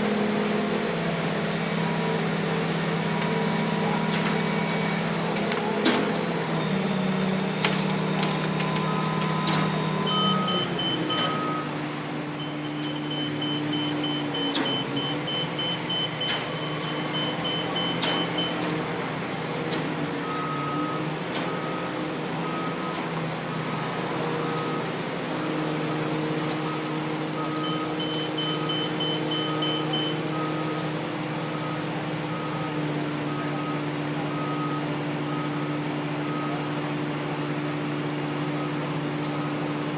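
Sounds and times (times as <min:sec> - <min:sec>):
heavy crane engine running: 0:00.0 - 0:39.9
low warning beeps: 0:06.1 - 0:18.8, 0:26.5 - 0:36.8
high rapid warning beeps: 0:08.8 - 0:11.7, 0:12.4 - 0:18.6, 0:26.7 - 0:30.8.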